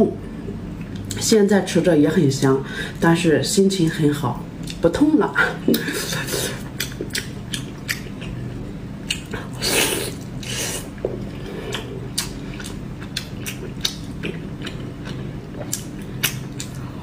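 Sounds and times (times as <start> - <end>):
chewing crunchy fried pork: 5.7 - 17.0.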